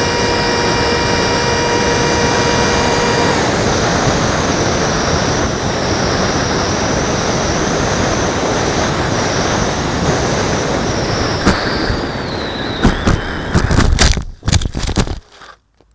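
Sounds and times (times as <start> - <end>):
high fan whine: 0.0 - 14.8
rush of air: 3.3 - 14.4.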